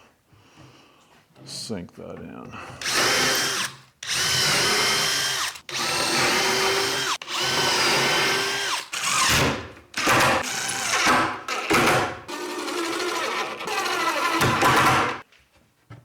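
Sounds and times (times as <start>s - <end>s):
power drill driving screws: 2.8s - 15.2s.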